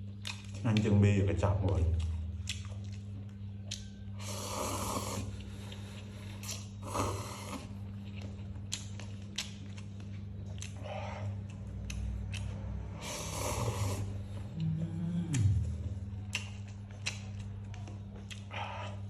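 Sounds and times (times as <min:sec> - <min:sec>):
steady low hum: 0:00.0 - 0:19.0
noodles being slurped: 0:13.0 - 0:14.2.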